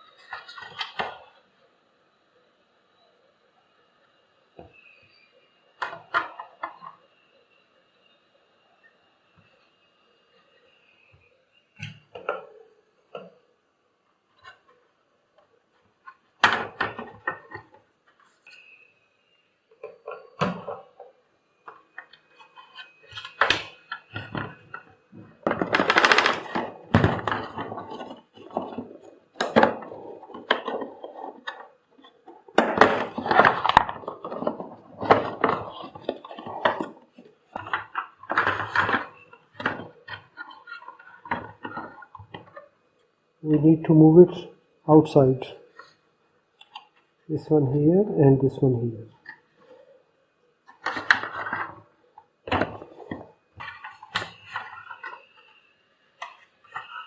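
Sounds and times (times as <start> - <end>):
plastic parts clattering and scraping: 0.0 - 1.4, 19.8 - 42.8, 50.6 - 57.0.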